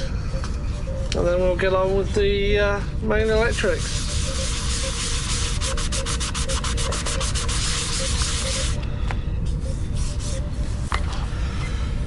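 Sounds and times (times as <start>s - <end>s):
sandpaper rubbing: 3.2s - 8.8s, 9.8s - 10.9s.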